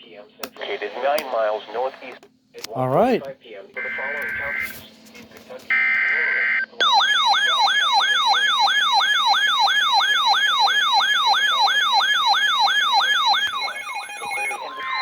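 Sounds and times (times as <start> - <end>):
siren-style alert tone: 6.4 - 15.0
high buzzing data tone: 13.0 - 15.0.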